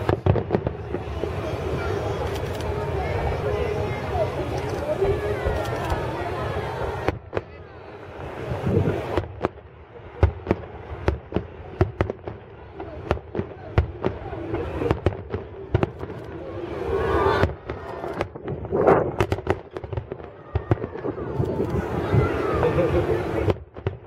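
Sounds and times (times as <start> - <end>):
fireworks bursting with sharp bangs: 0.0 - 24.0.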